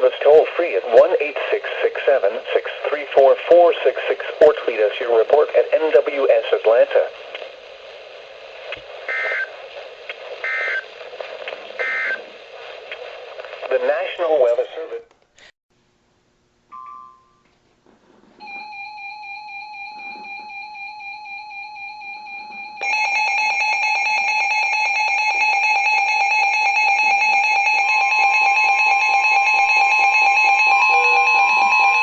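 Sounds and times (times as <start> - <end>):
steady electronic alert tone: 30.6 - 32.0
harsh multi-pitched alert tone: 30.7 - 32.0.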